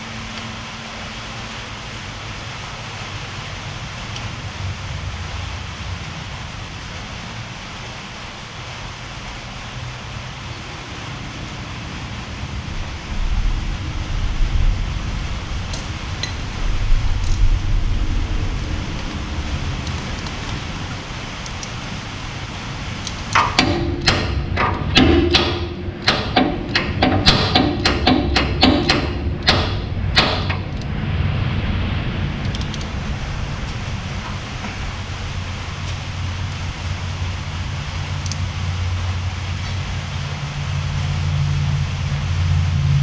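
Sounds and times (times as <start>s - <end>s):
low rumble: 0.0s - 43.0s
steady hissing noise: 0.0s - 43.0s
music with percussive beat: 23.5s - 30.5s.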